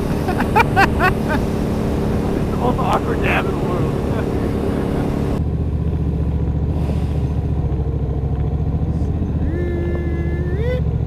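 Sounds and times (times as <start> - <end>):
wind noise rushing: 0.0 - 5.4
held rising tone: 0.0 - 11.0
motorcycle engine idling: 1.3 - 11.0.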